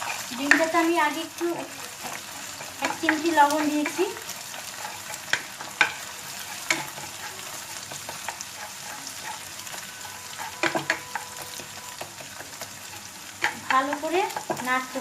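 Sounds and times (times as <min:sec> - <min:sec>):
egg sizzling in a frying pan: 0:00.0 - 0:15.0
utensil knocking and scraping pan: 0:07.9 - 0:14.7.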